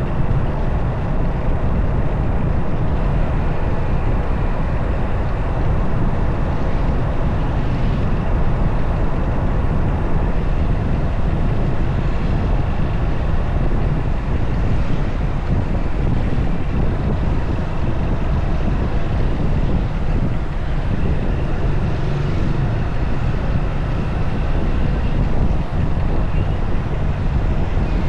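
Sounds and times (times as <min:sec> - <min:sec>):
motorcycle engine rumble: 0:00.0 - 0:28.0
wind buffeting microphone: 0:00.0 - 0:28.0.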